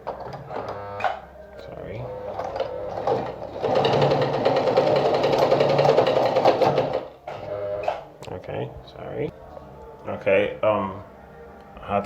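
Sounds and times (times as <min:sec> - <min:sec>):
sewing machine stitching: 0:02.2 - 0:08.0.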